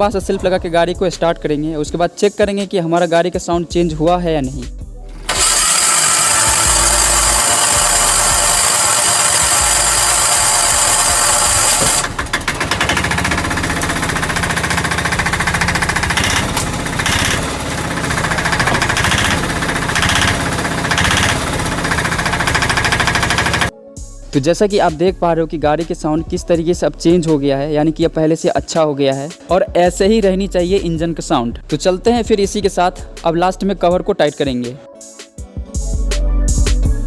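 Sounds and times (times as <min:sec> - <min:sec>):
electric starter cranking: 0:05.0 - 0:23.7
diesel engine clattering: 0:05.1 - 0:23.7.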